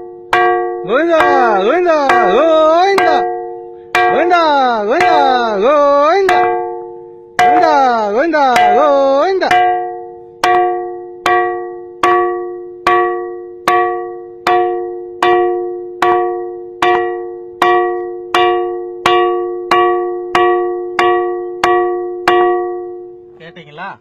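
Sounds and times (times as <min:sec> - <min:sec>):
ringing rock being struck: 0:00.0 - 0:23.4.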